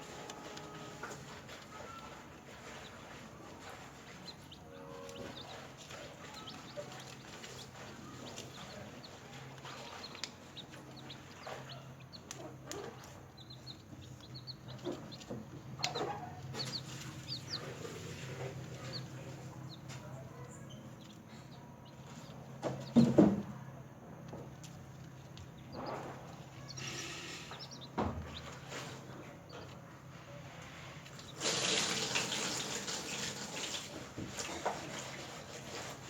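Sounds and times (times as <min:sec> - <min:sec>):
chicks peeping: 0:00.0 - 0:36.0.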